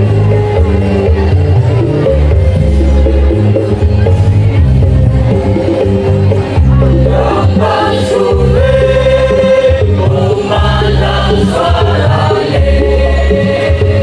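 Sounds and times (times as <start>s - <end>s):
deep bass line: 0.0s - 14.0s
choir singing: 7.0s - 14.0s.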